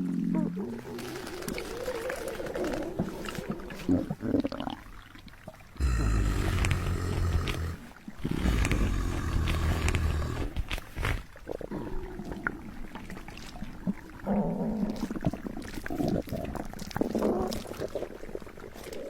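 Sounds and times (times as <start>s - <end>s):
long deep burps: 5.8s - 10.6s
quiet irregular sounds: 5.8s - 13.0s.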